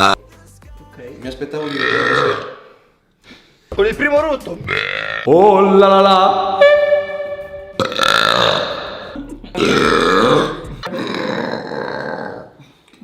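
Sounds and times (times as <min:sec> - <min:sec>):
person burping: 0:01.6 - 0:02.7, 0:04.7 - 0:05.3, 0:07.8 - 0:12.6.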